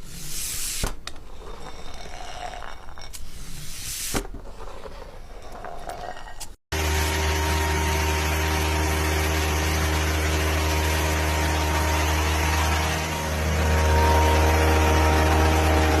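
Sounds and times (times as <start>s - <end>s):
motor humming: 6.8s - 16.0s.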